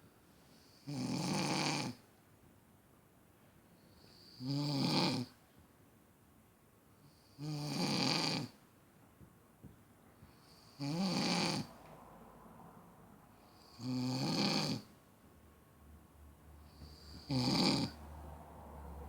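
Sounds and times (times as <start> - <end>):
person snoring loudly: 0.9 - 2.0, 4.4 - 5.3, 7.4 - 8.5, 10.8 - 11.7, 13.7 - 14.9, 16.8 - 18.0.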